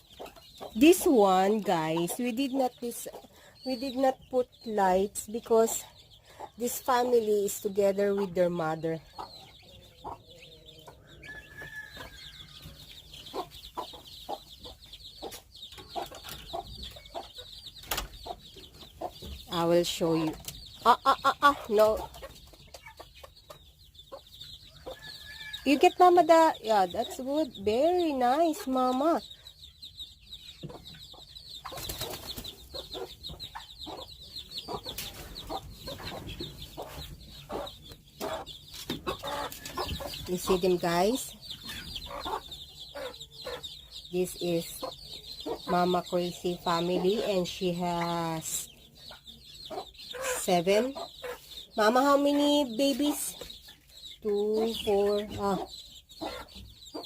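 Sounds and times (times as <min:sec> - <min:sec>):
chicks peeping: 0:00.0 - 0:57.0
hen clucking: 0:00.0 - 0:57.0.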